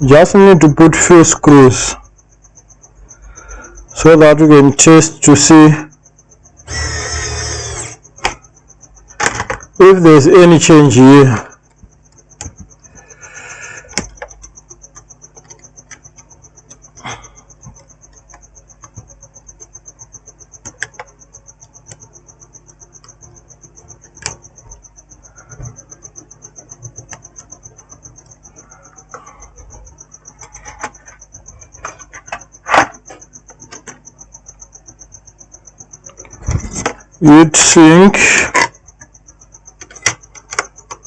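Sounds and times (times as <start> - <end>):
cricket chirping: 0.0 - 41.0
screws and tools clicking: 6.7 - 8.4.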